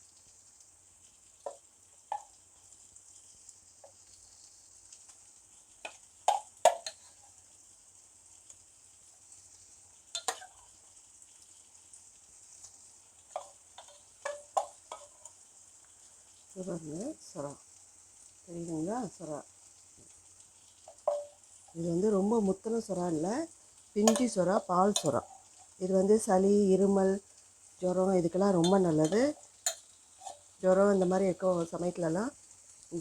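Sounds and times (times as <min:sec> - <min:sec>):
meat sizzling in oil: 0:00.0 - 0:33.0
utensil knocking against pan: 0:06.3 - 0:07.0, 0:20.9 - 0:21.3, 0:24.0 - 0:24.3.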